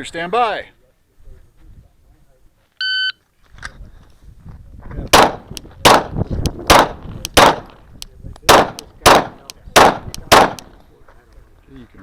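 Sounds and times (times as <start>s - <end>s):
pistol shots: 5.1s - 7.8s, 8.4s - 10.8s.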